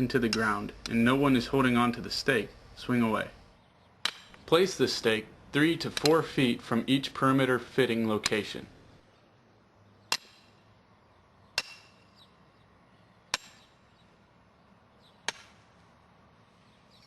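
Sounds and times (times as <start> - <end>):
hammer driving tent stake: 11.6 - 12.1, 13.3 - 13.7.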